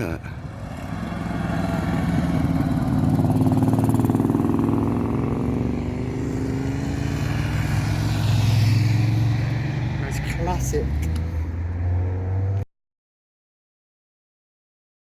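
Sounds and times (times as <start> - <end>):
vehicle engine running: 0.0 - 11.6.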